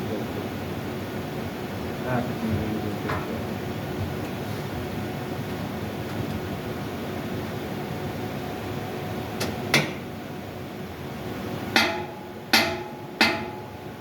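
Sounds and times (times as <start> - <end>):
steady background noise: 0.0 - 14.0
hammer striking metal: 11.8 - 13.9.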